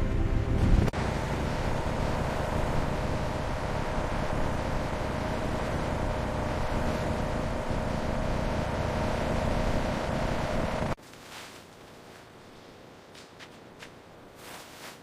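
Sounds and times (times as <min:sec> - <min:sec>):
mechanical drone: 0:00.0 - 0:11.0
faint hum: 0:00.0 - 0:15.0.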